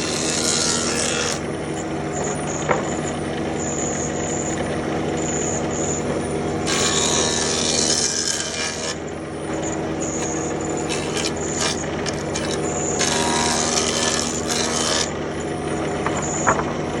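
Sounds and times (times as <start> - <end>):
tool cutting into wood: 0.0 - 1.4, 6.6 - 15.1
power tool motor humming: 0.0 - 16.7.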